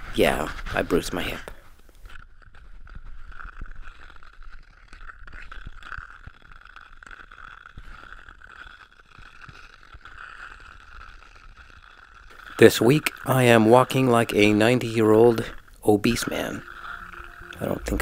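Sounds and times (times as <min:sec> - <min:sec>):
skate blades scraping on ice: 0:00.0 - 0:18.0
clicks and knocks from ice bumps: 0:02.2 - 0:13.3.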